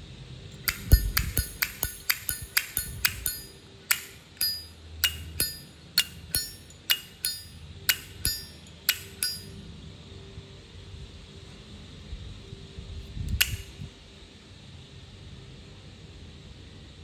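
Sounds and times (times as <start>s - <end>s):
lighter lid metallic clinks: 0.6s - 9.5s, 13.3s - 13.7s.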